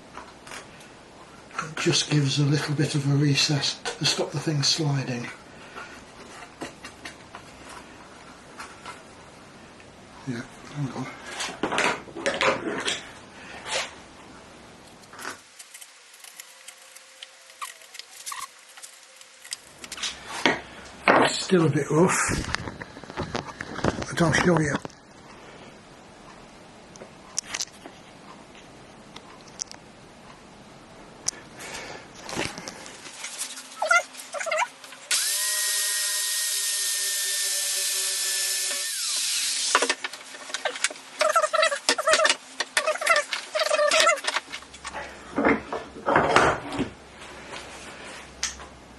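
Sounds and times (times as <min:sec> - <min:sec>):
low background noise: 0:00.0 - 0:36.5
power drill drilling into wood: 0:35.1 - 0:39.9.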